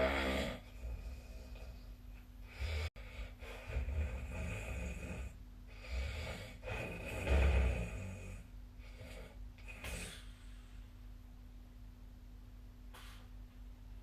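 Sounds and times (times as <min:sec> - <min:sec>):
person snoring: 0:00.0 - 0:01.8, 0:02.5 - 0:10.3.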